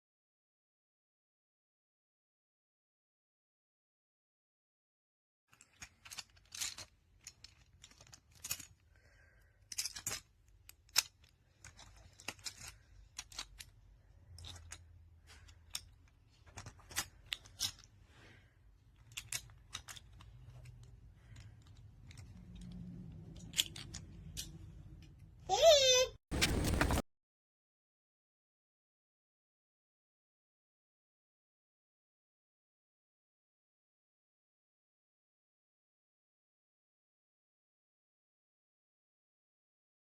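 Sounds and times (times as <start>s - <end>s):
plastic magnetic tiles clicking: 21.6s - 24.6s.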